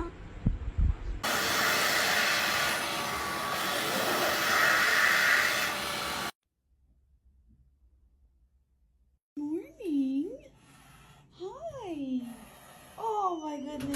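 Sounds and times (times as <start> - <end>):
loud steady hiss: 1.2 - 6.3.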